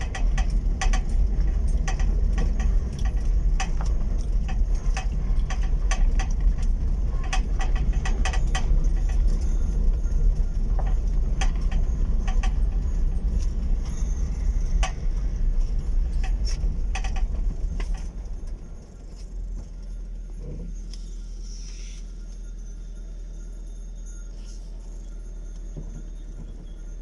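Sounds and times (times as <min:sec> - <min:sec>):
rattling clicks from car: 0:00.0 - 0:21.2
car engine rumbling: 0:00.0 - 0:27.0.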